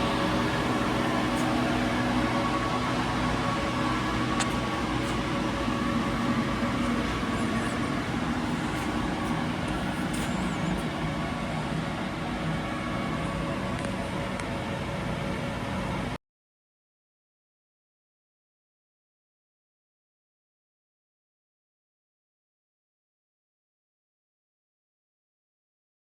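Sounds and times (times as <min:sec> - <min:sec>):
machining centre humming: 0:00.0 - 0:16.2.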